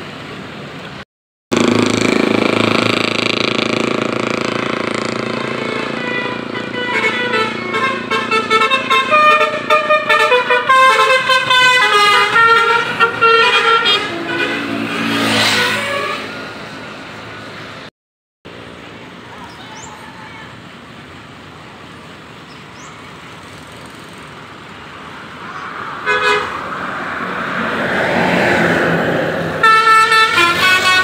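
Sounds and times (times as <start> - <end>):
multi-tone musical bus horn: 4.3 - 16.6, 26.0 - 26.6, 29.5 - 31.0.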